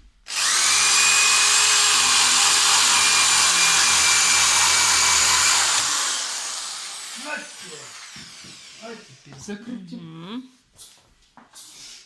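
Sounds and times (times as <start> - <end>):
electric drill whining: 0.3 - 9.1.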